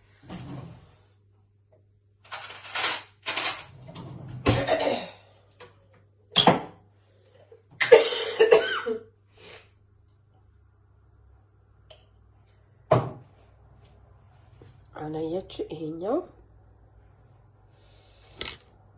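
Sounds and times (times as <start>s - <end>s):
person coughing: 4.5s - 5.3s, 8.0s - 9.0s.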